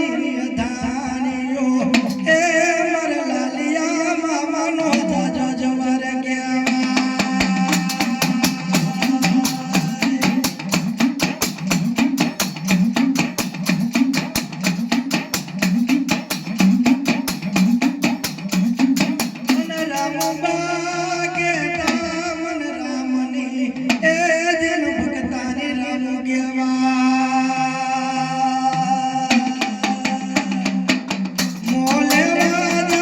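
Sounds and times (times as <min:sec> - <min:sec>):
fast drum strokes: 0:01.8 - 0:02.6, 0:06.7 - 0:20.9, 0:29.3 - 0:33.0.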